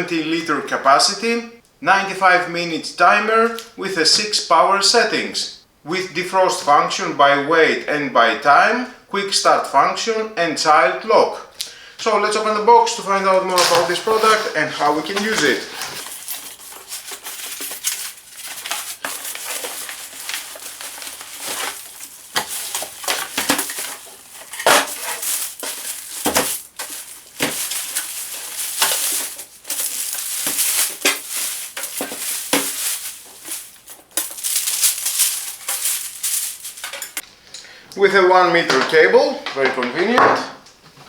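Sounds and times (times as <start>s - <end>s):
packaging rustling and crinkling: 13.1s - 37.2s.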